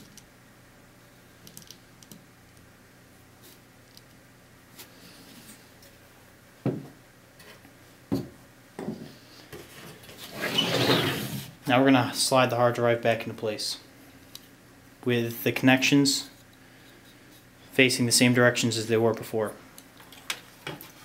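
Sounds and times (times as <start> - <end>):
rubbing and scraping: 9.6 - 11.5.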